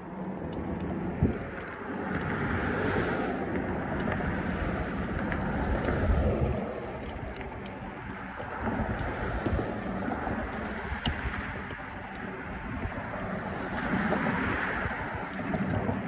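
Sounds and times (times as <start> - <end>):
bicycle tyre and air rush: 0.0 - 16.0
wind buffeting microphone: 0.0 - 16.0.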